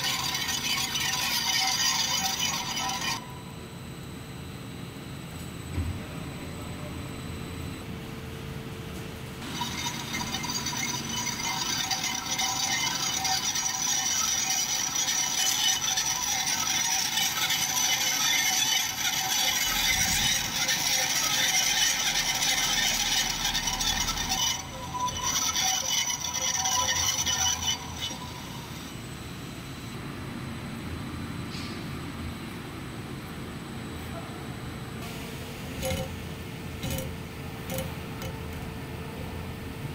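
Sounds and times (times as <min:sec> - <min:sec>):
metal lathe cutting: 0:00.0 - 0:03.2, 0:09.4 - 0:29.0.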